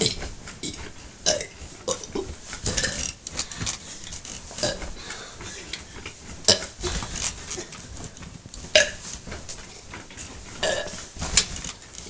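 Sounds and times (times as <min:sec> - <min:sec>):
person burping: 0:00.0 - 0:03.0, 0:04.6 - 0:04.9, 0:06.5 - 0:06.8, 0:08.7 - 0:09.0, 0:10.6 - 0:11.0.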